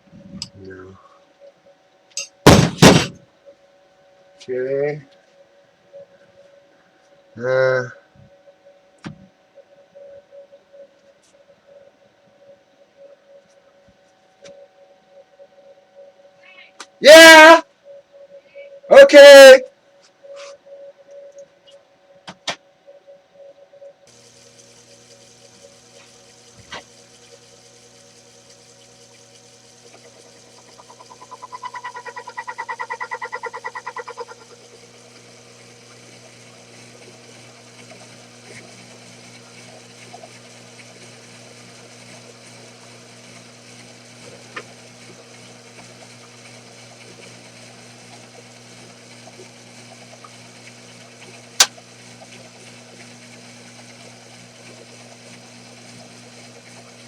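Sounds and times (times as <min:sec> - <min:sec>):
pulsing whine: 0:02.6 - 0:16.8, 0:17.4 - 0:57.0
milling machine motor hum: 0:24.1 - 0:57.0
sharp click: 0:51.6 - 0:51.8.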